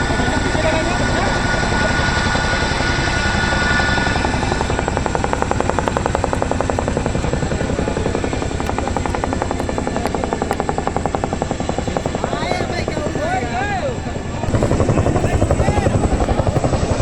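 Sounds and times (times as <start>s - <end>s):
helicopter rotors beating: 0.0s - 17.0s.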